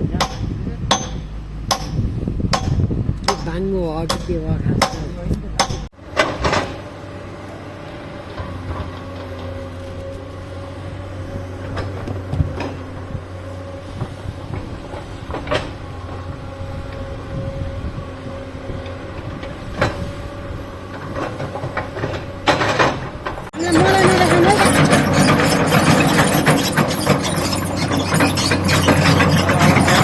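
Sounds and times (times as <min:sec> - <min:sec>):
excavator diesel engine running: 0:00.0 - 0:30.0
sharp metal knocks and clanks: 0:00.1 - 0:06.8, 0:21.0 - 0:30.0.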